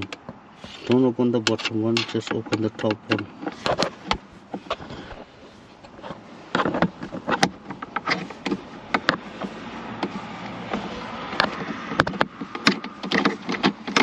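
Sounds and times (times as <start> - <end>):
screwdriver clicks and knocks: 10.0 - 14.0.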